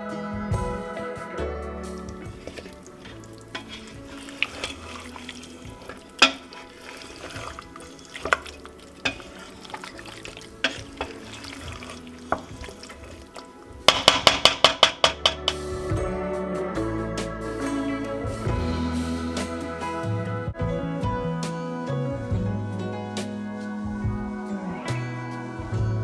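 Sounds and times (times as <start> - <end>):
food frying in a pot: 1.9 - 15.7
spoon scraping against pot: 2.0 - 15.6.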